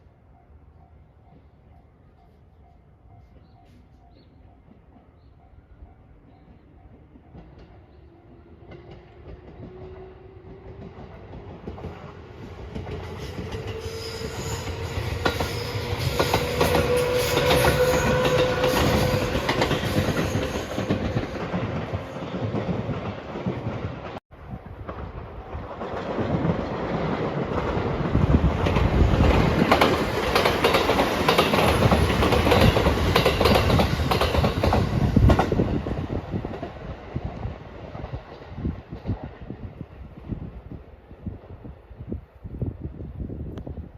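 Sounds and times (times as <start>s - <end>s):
rising train tone: 0.0s - 42.2s
train wheels clattering: 8.6s - 24.2s, 24.8s - 36.8s.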